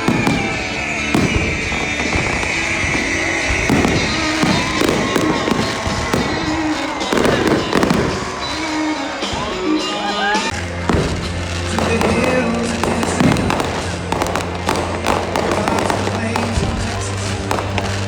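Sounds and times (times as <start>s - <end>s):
fireworks bursting and crackling: 0.0s - 18.0s
music over loudspeakers: 0.0s - 18.0s.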